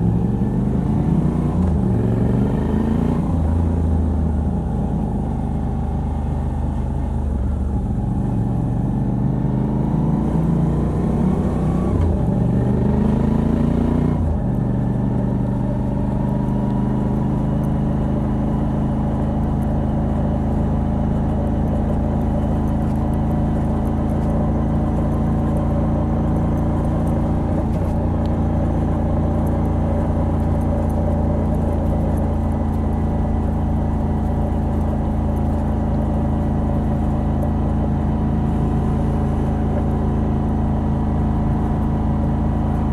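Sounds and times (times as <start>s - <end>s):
motorcycle engine revving: 0.0s - 6.4s, 8.0s - 42.9s.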